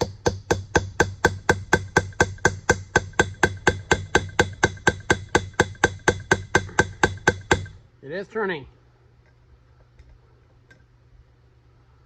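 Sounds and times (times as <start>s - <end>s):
hammer tapping metal punch: 0.0s - 7.8s.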